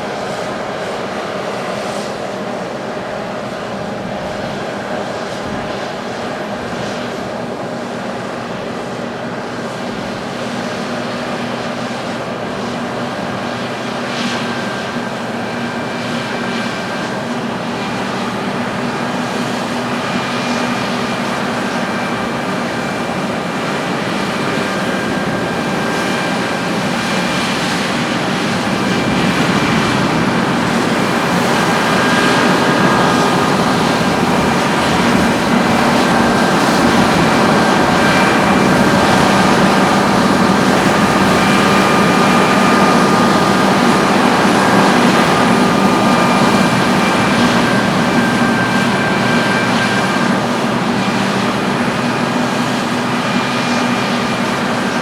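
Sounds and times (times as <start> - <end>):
harvesting machinery engine drone: 0.0 - 55.0
held whining tones: 12.6 - 55.0.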